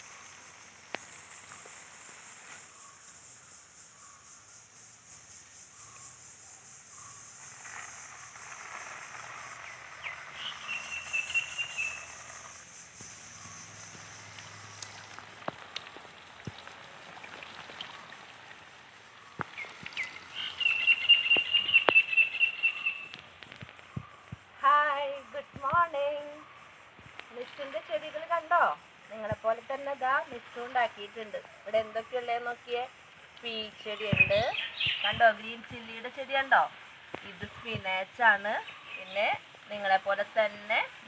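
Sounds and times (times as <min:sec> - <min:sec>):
steady high insect buzz: 0:00.0 - 0:41.0
trilling call: 0:07.0 - 0:15.2, 0:19.2 - 0:23.2, 0:33.9 - 0:36.0.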